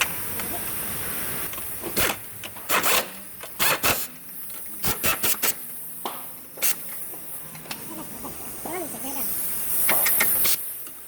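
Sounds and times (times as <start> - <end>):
sharp rasping tool bursts: 2.0 - 4.1, 4.8 - 5.6.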